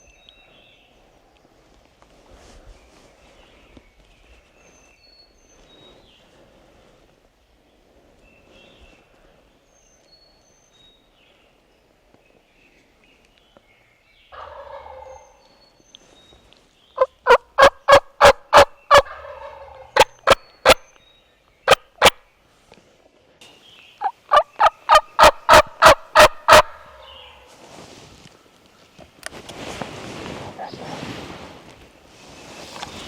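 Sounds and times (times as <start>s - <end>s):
turkey gobble: 14.4s - 15.3s, 17.0s - 20.8s, 21.7s - 22.2s, 24.0s - 27.3s
turkey yelping: 17.0s - 20.8s, 21.7s - 22.2s, 24.0s - 27.1s.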